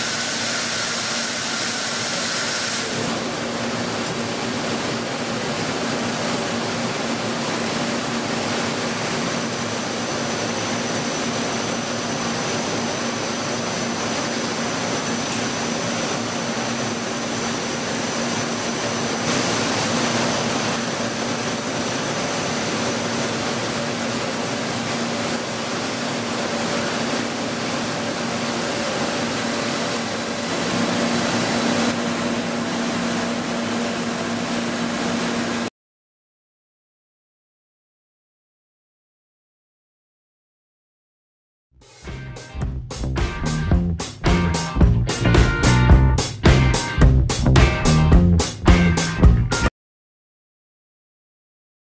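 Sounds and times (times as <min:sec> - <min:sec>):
machine tool hiss and hum: 0:00.0 - 0:35.7.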